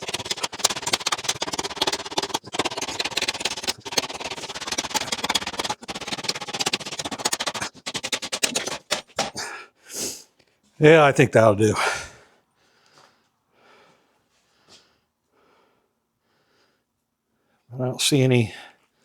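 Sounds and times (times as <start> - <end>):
knife chopping into wood: 1.7 - 9.5.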